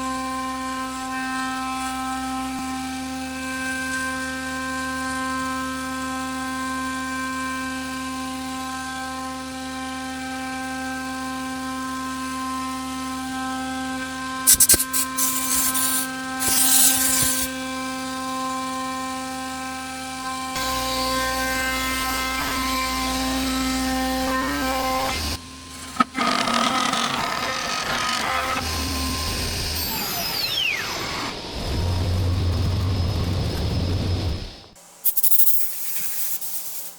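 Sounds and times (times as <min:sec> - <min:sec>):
router spindle whine: 0:00.0 - 0:34.8
deep rumble: 0:31.4 - 0:34.8.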